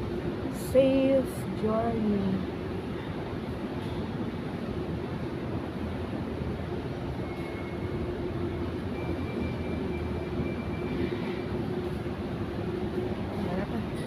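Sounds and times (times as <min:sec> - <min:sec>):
airplane engines humming: 0:00.0 - 0:14.0
faint high whine: 0:07.0 - 0:12.0.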